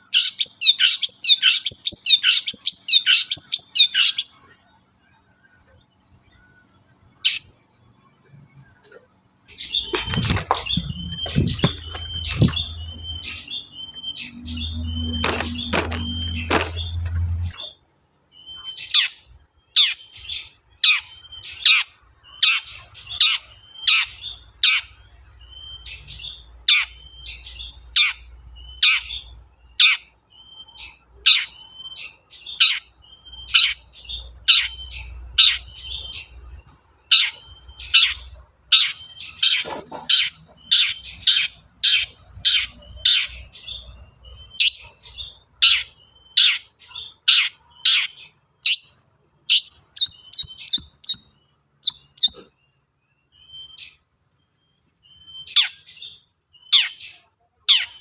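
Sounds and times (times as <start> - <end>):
shrike singing sharp calls: 9.5 - 17.7, 37.1 - 52.5
high chattering bird notes: 9.5 - 17.8, 37.1 - 52.5.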